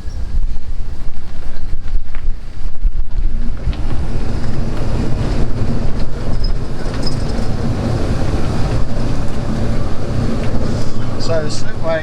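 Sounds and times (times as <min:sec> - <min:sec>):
road noise: 0:00.0 - 0:12.0
wind buffeting microphone: 0:00.0 - 0:12.0.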